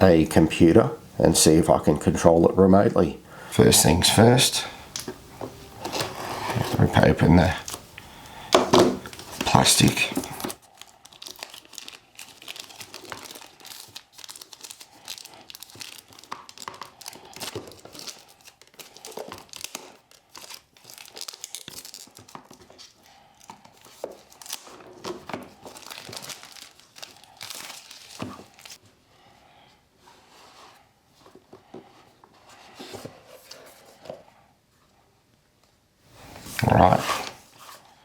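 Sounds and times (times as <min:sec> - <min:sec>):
plastic rustles: 0:08.5 - 0:28.8
plastic wrapping crinkling and tearing: 0:09.0 - 0:28.8.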